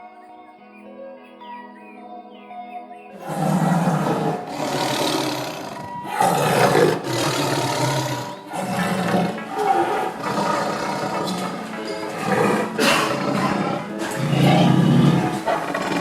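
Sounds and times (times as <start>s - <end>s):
lion roaring: 3.2s - 16.0s.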